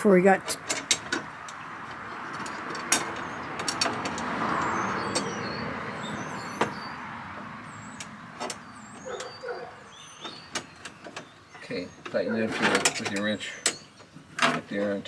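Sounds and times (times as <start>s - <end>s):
vehicle passing: 1.3s - 10.1s
birds chirping: 3.1s - 12.6s, 13.2s - 15.0s.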